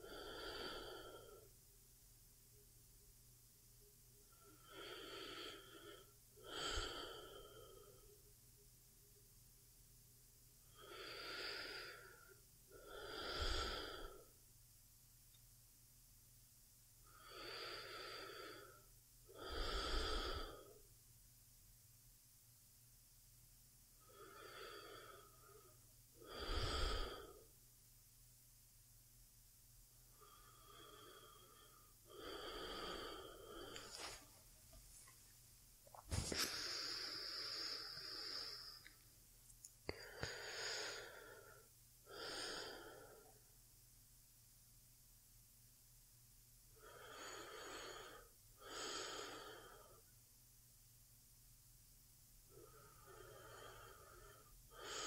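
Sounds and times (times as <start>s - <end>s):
woman breathing slowly: 0.0s - 1.6s, 4.2s - 8.3s, 10.6s - 14.4s, 17.0s - 20.9s, 24.0s - 27.6s, 30.0s - 35.3s, 35.9s - 39.0s, 39.8s - 43.5s, 46.7s - 50.1s, 52.4s - 55.0s.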